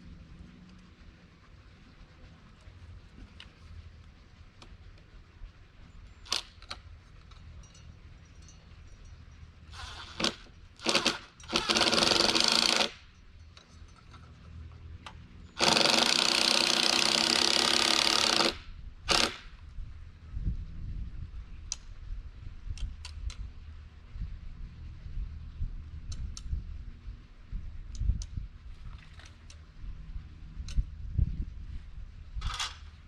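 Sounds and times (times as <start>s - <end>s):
power drill running: 9.8s - 13.0s, 15.6s - 19.4s.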